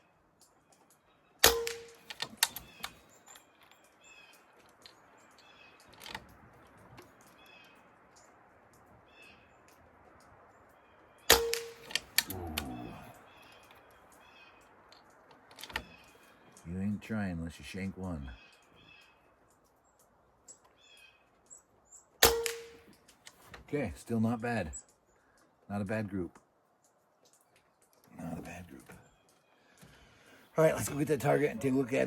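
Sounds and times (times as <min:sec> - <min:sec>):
faint bird chirps: 0:00.0 - 0:23.1, 0:23.8 - 0:32.0
air rifle shot: 0:01.4 - 0:02.1, 0:11.3 - 0:12.3, 0:22.2 - 0:22.9
rifle bolt clicking: 0:01.4 - 0:03.4, 0:11.3 - 0:12.8, 0:15.0 - 0:16.0, 0:22.2 - 0:23.4.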